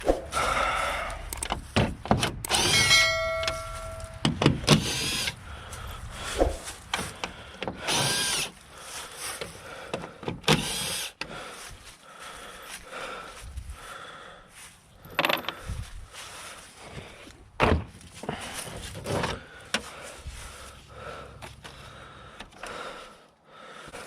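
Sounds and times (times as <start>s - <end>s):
tool clicks and knocks: 1.3s - 5.4s
cordless drill whirring: 2.4s - 2.8s, 4.7s - 5.4s, 7.8s - 8.6s, 10.5s - 11.1s.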